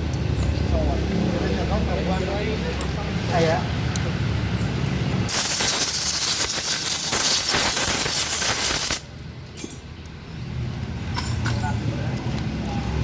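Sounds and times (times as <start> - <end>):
pressurised air hissing: 5.3 - 9.0.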